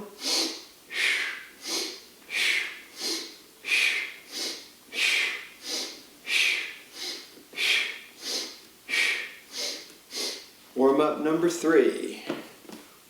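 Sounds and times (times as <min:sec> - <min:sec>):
rhythmic breathing: 0:00.0 - 0:10.5.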